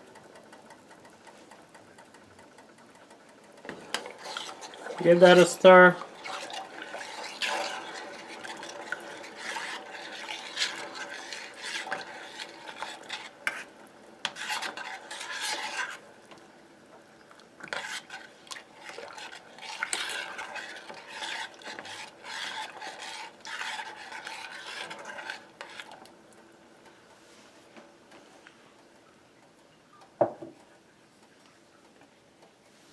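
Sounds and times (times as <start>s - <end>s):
utensil scraping and clinking in pot: 3.7s - 16.1s, 17.3s - 26.1s.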